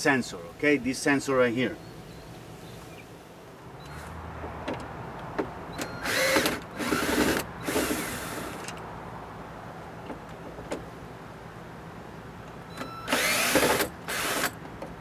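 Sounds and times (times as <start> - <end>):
cordless drill driver running: 6.0 - 8.5, 13.1 - 14.5.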